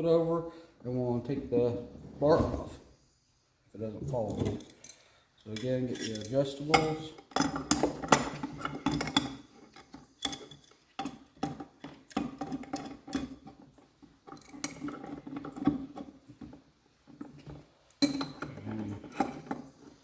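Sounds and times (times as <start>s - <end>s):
wrenches clinking on metal: 4.3s - 16.1s, 18.0s - 19.7s.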